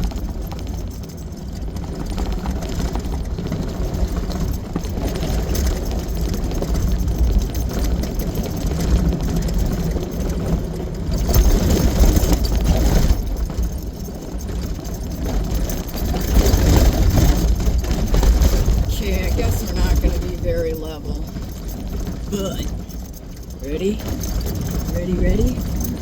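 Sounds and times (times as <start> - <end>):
vehicle driving on dirt road: 0.0 - 26.0.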